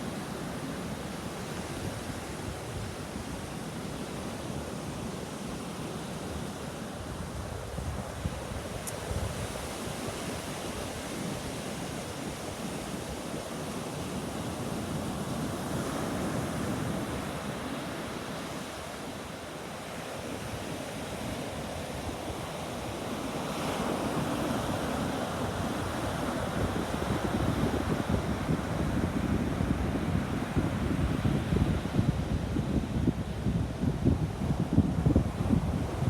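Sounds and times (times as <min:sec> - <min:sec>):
sea surf washing onto beach: 0:00.0 - 0:36.0
wind buffeting microphone: 0:25.4 - 0:36.0.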